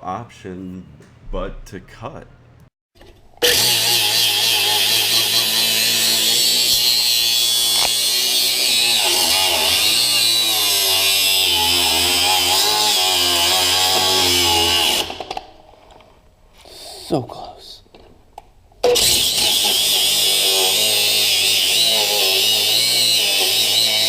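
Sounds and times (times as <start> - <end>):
power tool cutting metal: 3.4 - 15.5, 18.8 - 24.0.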